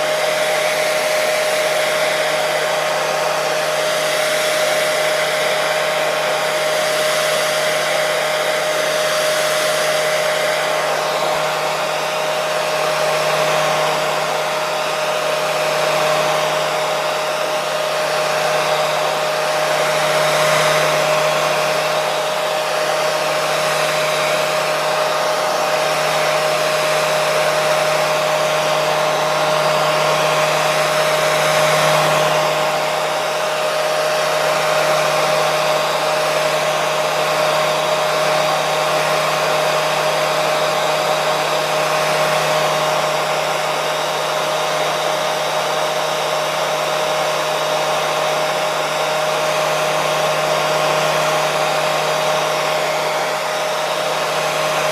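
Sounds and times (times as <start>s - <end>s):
hair dryer running: 0.0s - 54.9s.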